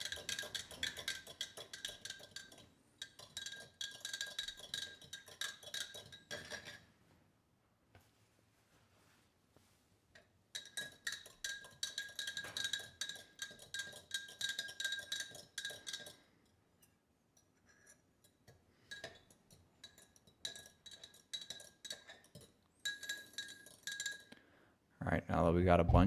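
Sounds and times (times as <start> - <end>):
utensil clinking against glass: 0.0 - 6.8, 10.5 - 24.4.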